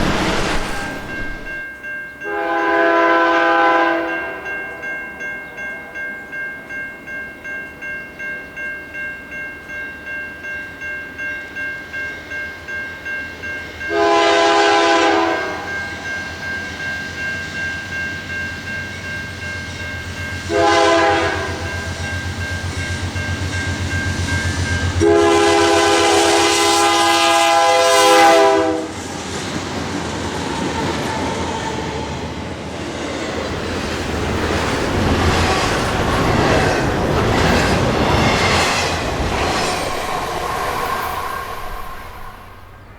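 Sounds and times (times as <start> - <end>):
locomotive engine rumble: 0.0 - 1.6
crossing warning bell ringing: 0.0 - 29.0
train rolling by: 0.0 - 42.9
locomotive air horn blasts: 2.2 - 4.5, 13.9 - 15.7, 20.5 - 21.8, 25.0 - 29.0.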